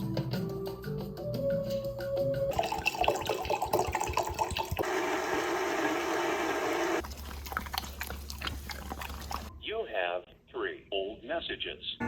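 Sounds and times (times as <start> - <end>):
water running: 2.5 - 9.5.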